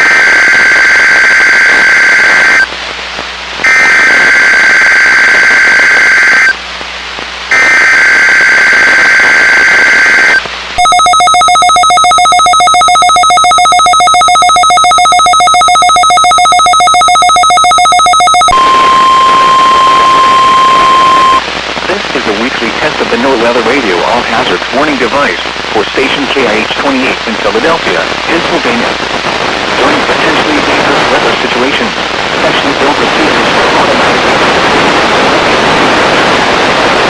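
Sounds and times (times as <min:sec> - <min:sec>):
buzzy digital data bursts: 0:00.0 - 0:02.7, 0:03.6 - 0:06.6, 0:07.5 - 0:21.4
harsh pulsing alarm tone: 0:00.0 - 0:02.7, 0:03.7 - 0:06.6, 0:07.5 - 0:21.4
steady warning tone: 0:00.0 - 0:02.7, 0:03.7 - 0:06.6, 0:07.5 - 0:21.4.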